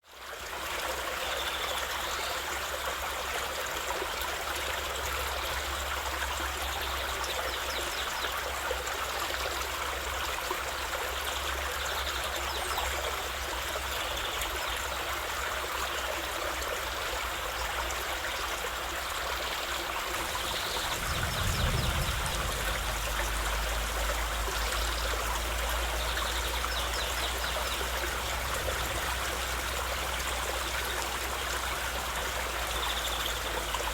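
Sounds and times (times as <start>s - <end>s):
water splashing over rocks: 19.8s - 33.9s
low rumble: 20.2s - 26.0s, 27.9s - 30.5s.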